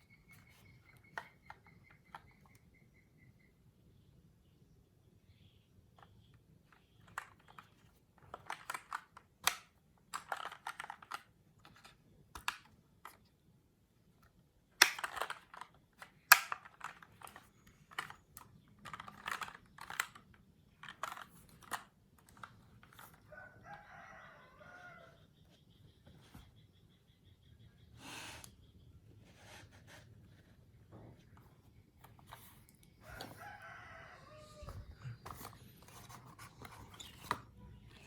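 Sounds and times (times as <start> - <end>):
mechanical keyboard typing: 8.4 - 11.3.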